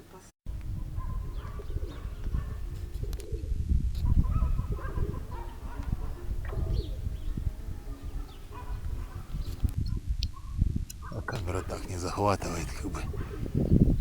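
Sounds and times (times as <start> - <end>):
wind buffeting microphone: 0.5 - 14.0
pigeons cooing: 0.9 - 9.5, 10.4 - 13.9.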